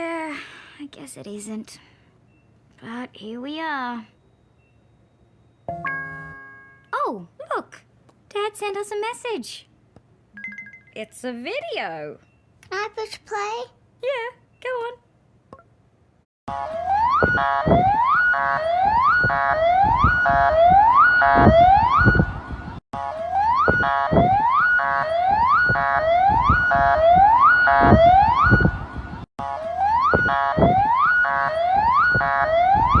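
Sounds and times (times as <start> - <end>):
siren tone sweeping upward: 16.5 - 33.0
low thuds: 25.6 - 29.3.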